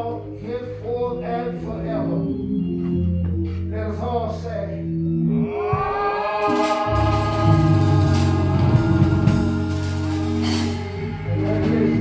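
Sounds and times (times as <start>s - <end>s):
bass line: 0.0s - 12.0s
organ chords: 0.0s - 12.0s
drums and cymbals: 5.7s - 12.0s.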